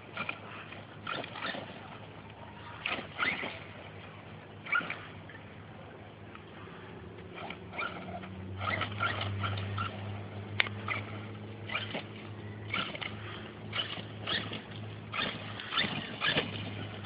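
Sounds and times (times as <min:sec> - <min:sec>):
steady low hum: 0:00.0 - 0:17.0
electric motor chirpy whines: 0:07.3 - 0:17.0.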